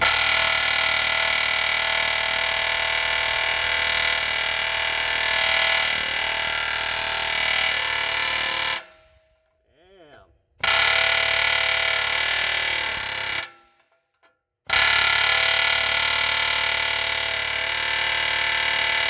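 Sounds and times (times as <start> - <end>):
angle grinder cutting metal: 0.0 - 8.9.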